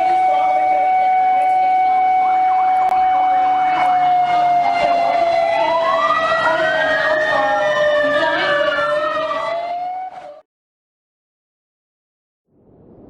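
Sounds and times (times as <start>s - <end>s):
emergency alert siren wailing: 0.0s - 10.4s.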